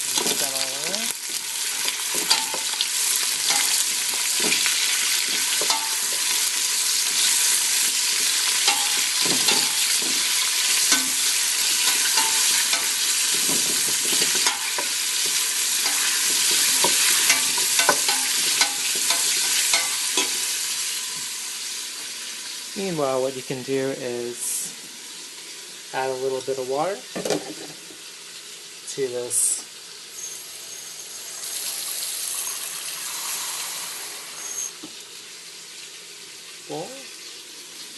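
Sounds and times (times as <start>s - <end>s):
onions sizzling in oil: 0.0s - 37.9s
utensil scraping and knocking pot: 1.8s - 2.8s, 3.4s - 6.5s, 7.1s - 20.4s.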